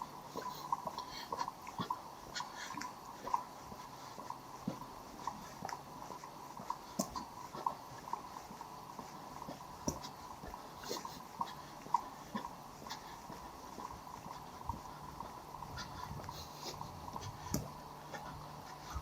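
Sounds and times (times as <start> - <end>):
walking footsteps: 0.0 - 19.0.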